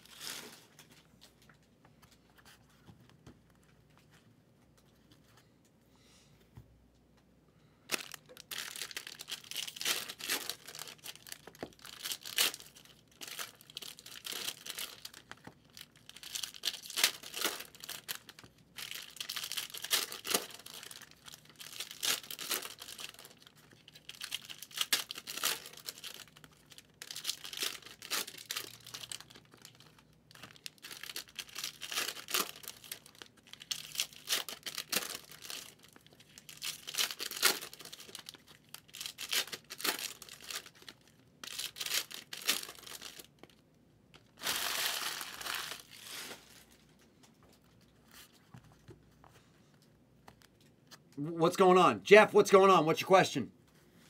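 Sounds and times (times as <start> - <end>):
wrappers crinkling and tearing: 0.0 - 1.4, 7.9 - 48.5.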